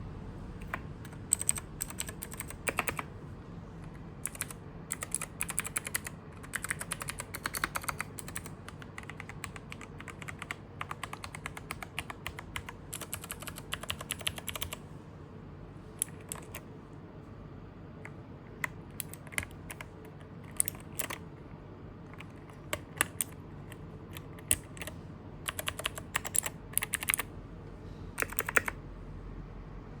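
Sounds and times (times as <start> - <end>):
mechanical keyboard key clicks: 4.2 - 14.8, 18.6 - 21.2, 22.1 - 27.3, 28.2 - 28.8.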